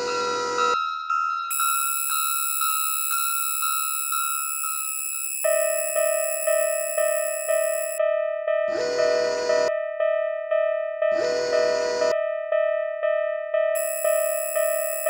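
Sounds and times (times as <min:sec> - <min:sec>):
railroad crossing bell ringing: 0:13.8 - 0:15.0.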